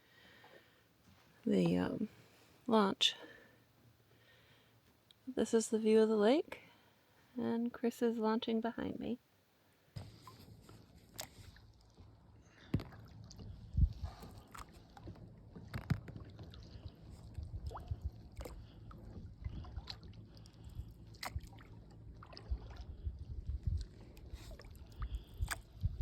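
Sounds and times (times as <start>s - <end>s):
paddle splashes and knocks: 10.0s - 20.1s
low steady rumble: 10.0s - 26.0s.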